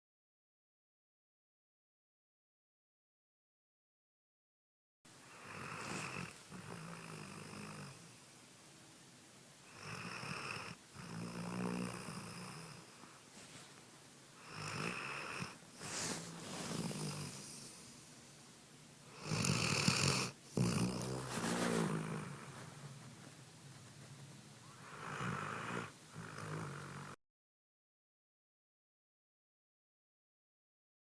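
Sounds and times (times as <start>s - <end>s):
dog snoring with whistle: 5.3s - 8.0s, 9.7s - 13.1s, 14.4s - 18.0s, 19.1s - 22.8s, 24.6s - 27.2s.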